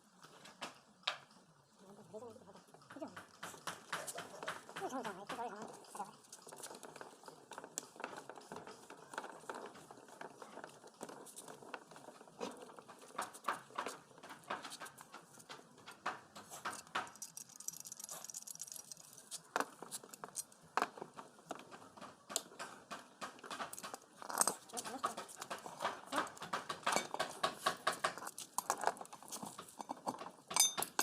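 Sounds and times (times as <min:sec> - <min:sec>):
clicks and knocks of tools: 0:12.4 - 0:31.0.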